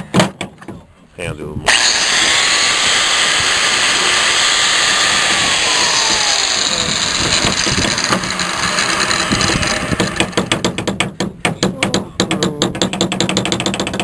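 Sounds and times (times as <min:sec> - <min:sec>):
power tool motor whining: 0:01.7 - 0:10.6
irregular knocks: 0:09.1 - 0:14.0.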